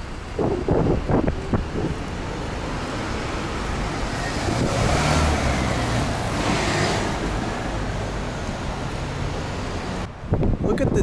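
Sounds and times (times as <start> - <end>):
vehicle passing by: 1.8 - 10.1.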